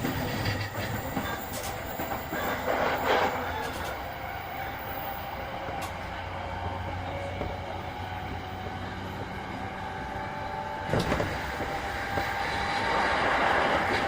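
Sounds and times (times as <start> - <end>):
sharp clack of rail joint: 0.0 - 4.0
train wheel and motor rumble: 0.0 - 14.0
rushing noise: 11.0 - 14.0.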